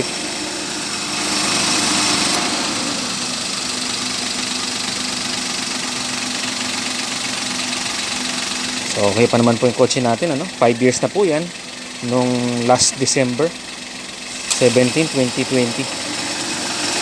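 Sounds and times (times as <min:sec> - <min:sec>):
car engine idling: 0:00.0 - 0:17.0
loud hiss: 0:14.3 - 0:17.0.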